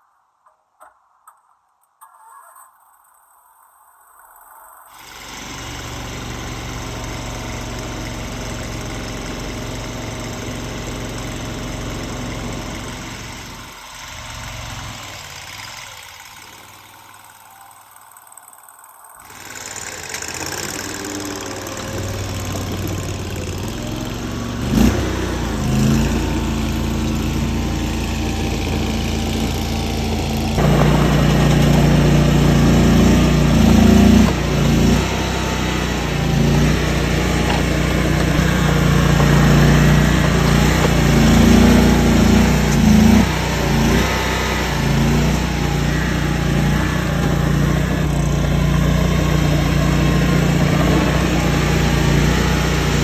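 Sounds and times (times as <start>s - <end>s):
skid steer engine running: 4.9s - 53.0s.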